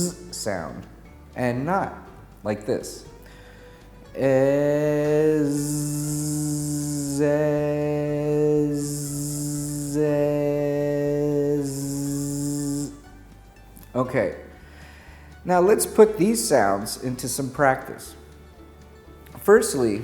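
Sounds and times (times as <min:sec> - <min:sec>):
man buzzing zzz sound: 0:00.0 - 0:00.2, 0:04.2 - 0:13.2
man humming: 0:00.0 - 0:00.3, 0:04.1 - 0:13.2.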